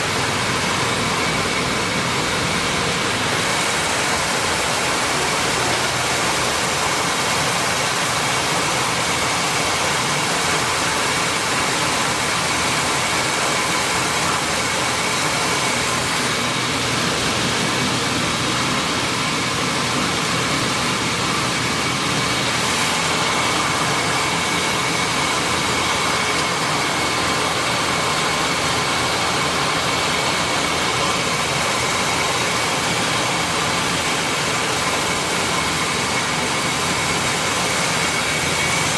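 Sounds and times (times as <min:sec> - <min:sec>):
milling machine running: 0:00.0 - 0:38.9.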